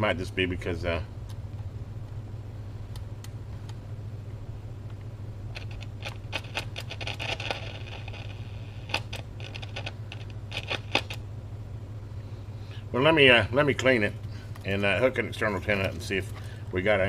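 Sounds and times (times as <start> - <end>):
radio low hum and static: 4.0 - 17.0
scratchy crackles and clicks: 4.8 - 11.3, 14.0 - 17.0.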